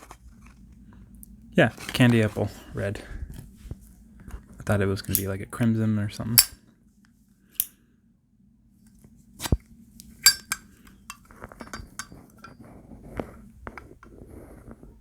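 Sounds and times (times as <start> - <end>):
soft handling noise: 0.0 - 5.4, 8.8 - 15.0
metal lighters clinking: 10.0 - 12.6.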